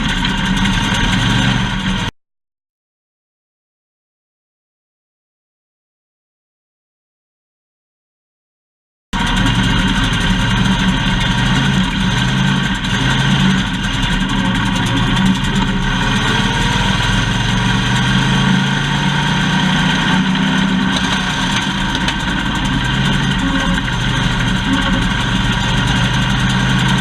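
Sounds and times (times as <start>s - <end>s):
race car engine running: 0.0s - 2.1s, 9.2s - 27.0s.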